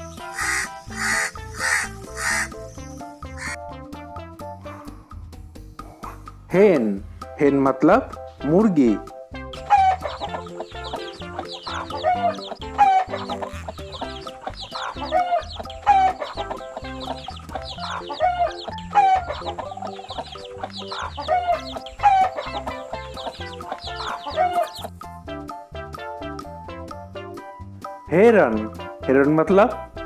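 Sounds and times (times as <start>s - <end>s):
hen clucking: 0.0s - 2.6s, 3.3s - 3.6s, 9.6s - 24.9s
background music: 0.0s - 30.0s.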